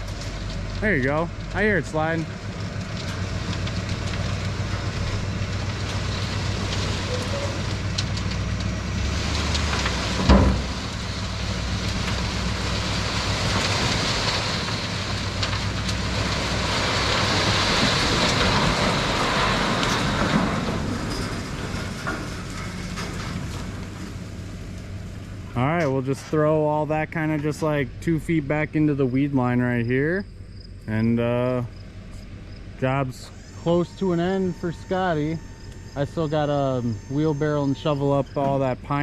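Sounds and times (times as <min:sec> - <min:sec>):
dirt and rocks sliding out: 0:00.0 - 0:29.2
heavy thump: 0:10.2 - 0:10.8.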